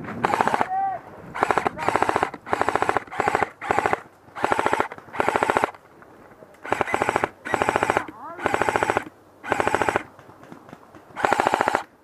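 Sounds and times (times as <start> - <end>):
airsoft gun bursts: 0.2 - 0.8, 1.4 - 5.8, 6.6 - 10.1, 11.2 - 11.9.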